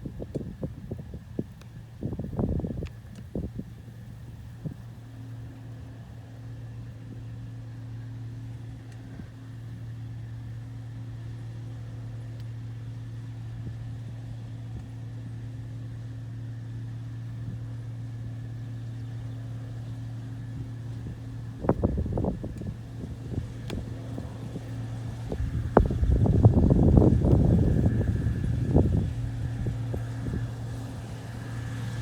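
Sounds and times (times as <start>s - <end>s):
combine harvester drone: 0.0s - 32.0s
faint machine whine: 0.0s - 32.0s.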